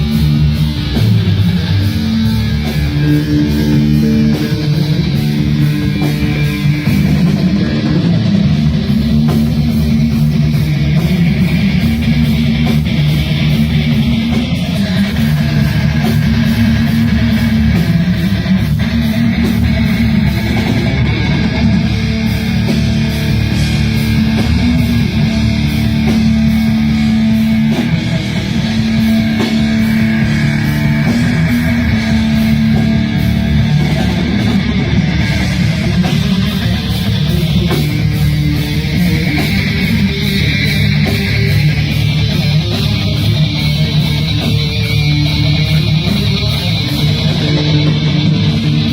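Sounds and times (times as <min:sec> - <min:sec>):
bass guitar: 0:00.0 - 0:48.9
electric guitar shredding: 0:00.0 - 0:48.9
steady drum beat: 0:00.0 - 0:48.9.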